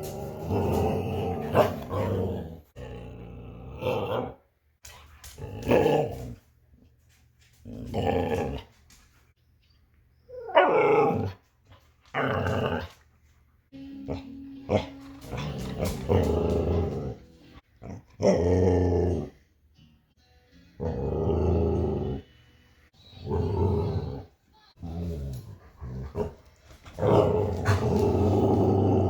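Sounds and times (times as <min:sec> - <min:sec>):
dogs woo-ing and grumbling: 0:00.0 - 0:04.4, 0:10.3 - 0:11.4, 0:14.0 - 0:19.4.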